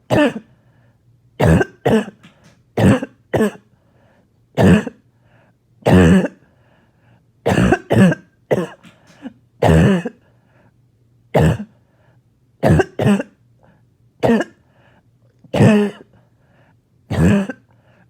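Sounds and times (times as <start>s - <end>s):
person coughing chesty cough: 0.1s - 0.5s, 1.4s - 3.7s, 4.6s - 5.0s, 5.8s - 6.4s, 7.5s - 10.2s, 11.3s - 11.8s, 12.6s - 13.4s, 14.2s - 14.6s, 15.5s - 16.1s, 17.1s - 17.7s.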